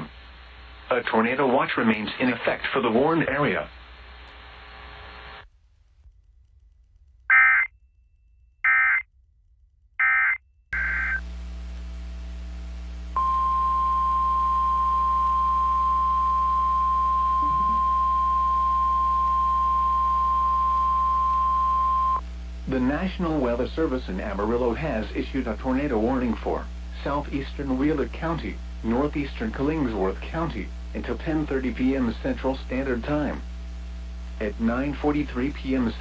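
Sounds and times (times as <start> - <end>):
digital data tone bursts: 7.3 - 7.7, 10.0 - 11.2, 13.2 - 22.2
steady warning alarm tone: 7.3 - 7.7, 8.6 - 9.0, 10.0 - 11.2, 13.2 - 22.2.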